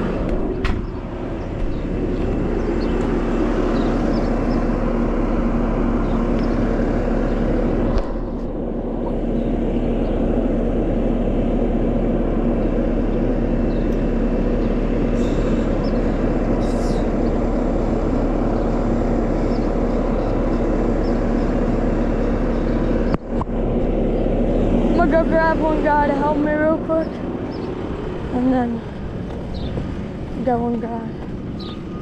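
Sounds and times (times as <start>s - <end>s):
skid steer engine running: 0.0s - 32.0s.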